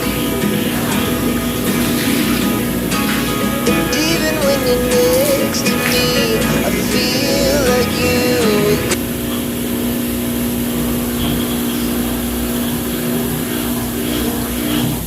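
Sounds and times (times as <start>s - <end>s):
machine motor humming: 0.0s - 9.2s.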